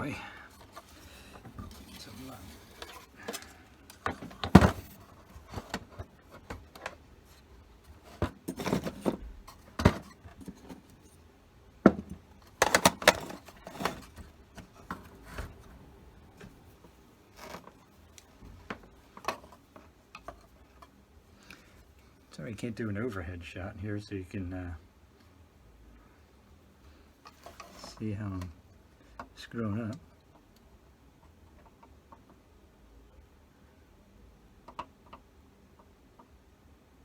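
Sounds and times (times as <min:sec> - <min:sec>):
tools clattering on workbench: 0:08.0 - 0:10.8.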